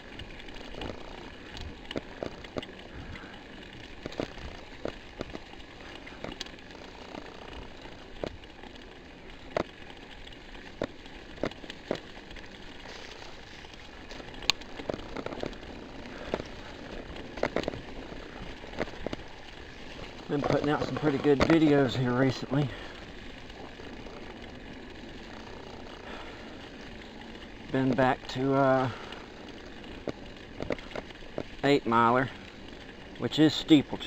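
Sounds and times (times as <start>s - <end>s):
bike rattling clicks and knocks: 0.0s - 34.0s
bike tyres rolling on dirt: 0.0s - 34.0s.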